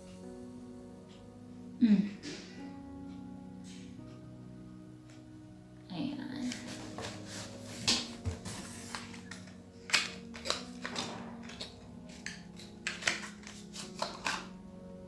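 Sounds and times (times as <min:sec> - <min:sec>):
soft background music: 0:00.0 - 0:15.0
packaging clicks and rustles: 0:06.5 - 0:14.6.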